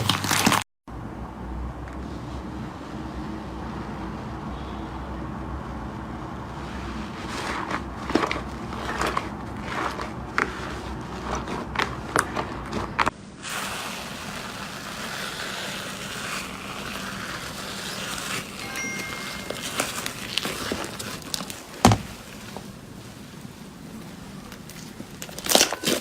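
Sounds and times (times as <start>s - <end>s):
crunchy material crushed by hand: 0.0s - 0.6s, 7.1s - 22.5s, 24.5s - 26.0s
steady hissing rustle: 13.4s - 18.6s.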